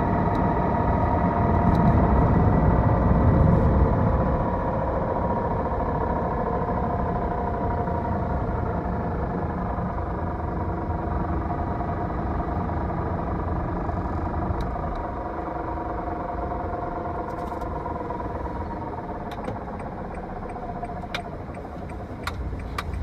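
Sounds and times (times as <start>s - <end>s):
low road rumble: 0.0s - 23.0s
transmission whine: 0.0s - 23.0s
sharp clicks: 19.3s - 23.0s.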